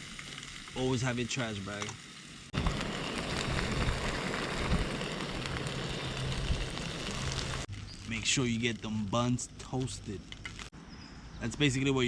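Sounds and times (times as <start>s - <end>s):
frying pan sizzling: 0.0s - 9.1s.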